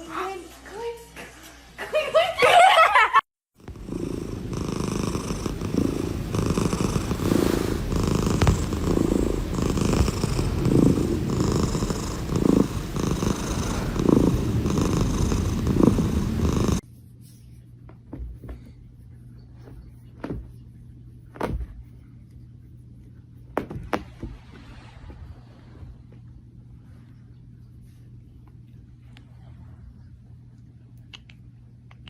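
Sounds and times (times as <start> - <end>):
cat purring loudly: 3.6 - 16.8.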